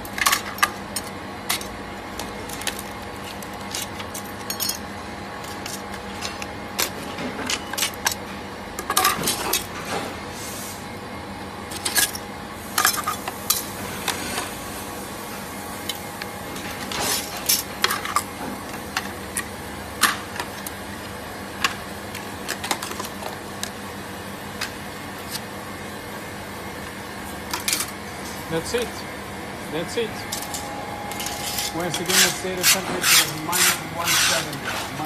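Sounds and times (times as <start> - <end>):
steady machine hum: 0.0 - 35.0
prying tools tapping and scraping: 30.3 - 35.0.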